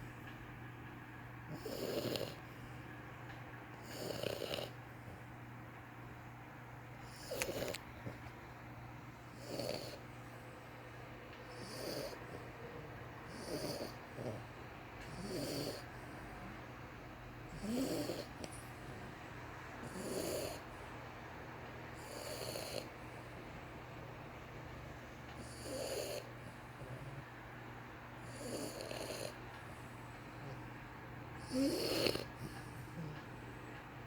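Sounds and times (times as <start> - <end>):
puppy snoring: 1.5 - 2.7, 3.7 - 5.3, 7.0 - 8.4, 9.3 - 10.7, 11.4 - 16.7, 17.4 - 19.2, 19.8 - 20.9, 21.9 - 23.4, 25.3 - 27.4, 28.2 - 30.8, 31.4 - 33.7.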